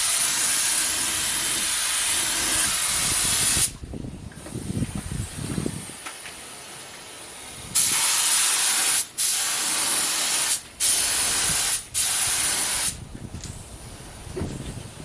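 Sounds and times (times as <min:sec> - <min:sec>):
spray paint hiss: 0:00.0 - 0:03.8, 0:04.6 - 0:15.0.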